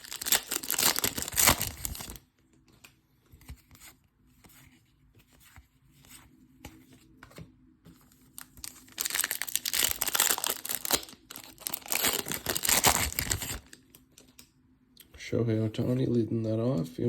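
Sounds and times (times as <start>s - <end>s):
foil wrapper tearing and crinkling: 0.0s - 2.2s, 8.4s - 13.8s.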